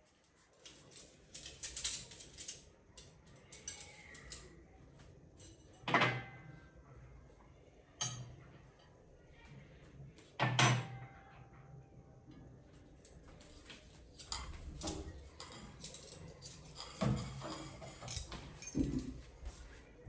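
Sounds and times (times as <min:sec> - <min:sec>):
tableware rustling and clattering: 0:00.6 - 0:04.6, 0:05.4 - 0:06.6, 0:13.4 - 0:19.8.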